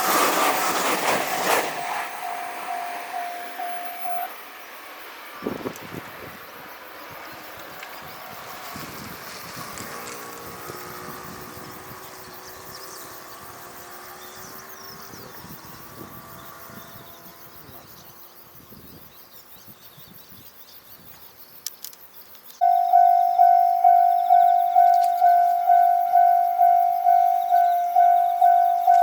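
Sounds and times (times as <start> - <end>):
train rail noise: 0.0 - 14.1, 21.8 - 29.0
level crossing alarm bell: 1.2 - 4.4, 22.6 - 29.0.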